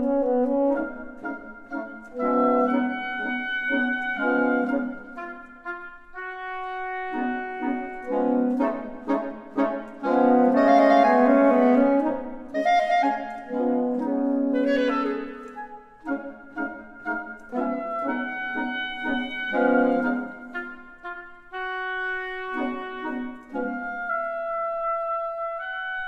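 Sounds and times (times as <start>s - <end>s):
reed quintet playing chamber music: 0.0s - 26.0s.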